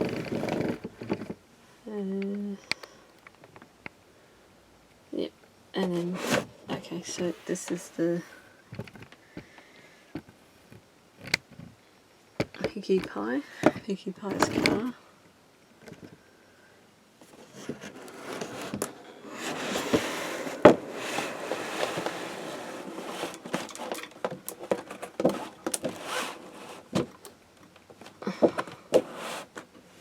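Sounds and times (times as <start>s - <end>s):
plastic rustling and crackling: 17.2s - 29.7s.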